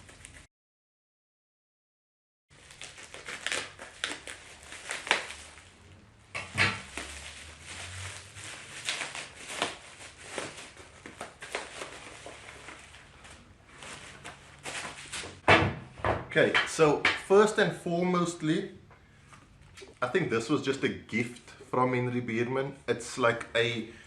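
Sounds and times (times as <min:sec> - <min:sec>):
wrapping being torn and crumpled: 0:00.0 - 0:00.5, 0:02.5 - 0:15.4.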